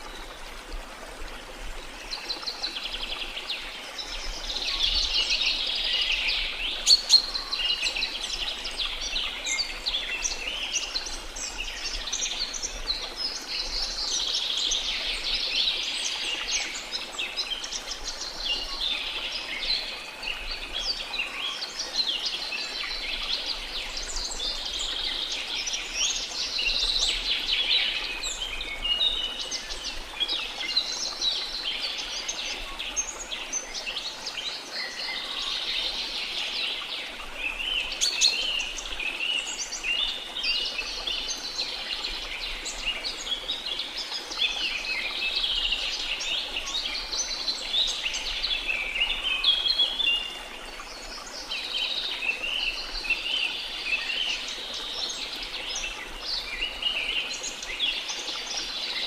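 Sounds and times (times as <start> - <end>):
flowing water hiss: 0.0 - 59.0.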